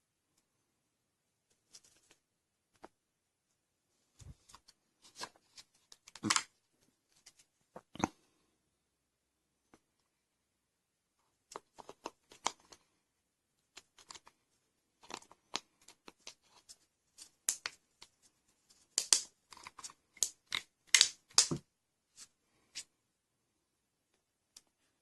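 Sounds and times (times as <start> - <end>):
materials clicking and crackling by hand: 11.5 - 12.9, 13.7 - 14.4, 15.0 - 21.6.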